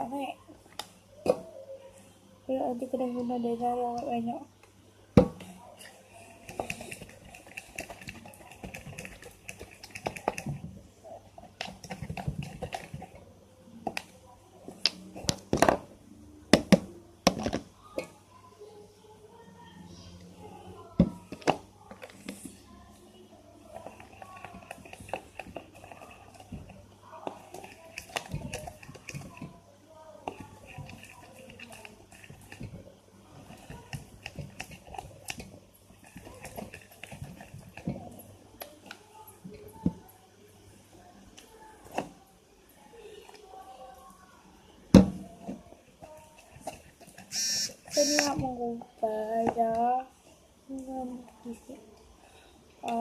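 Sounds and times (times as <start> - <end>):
slime squelching: 5.8 - 13.2, 46.0 - 48.5.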